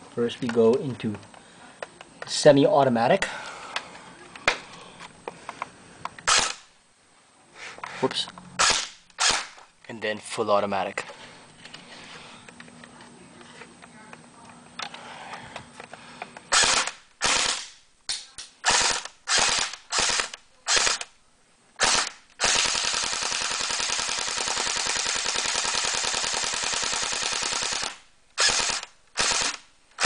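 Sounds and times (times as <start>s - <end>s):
airsoft rifle automatic bursts: 6.2s - 6.7s, 8.6s - 9.6s, 16.5s - 17.8s, 18.6s - 21.1s, 21.8s - 30.0s.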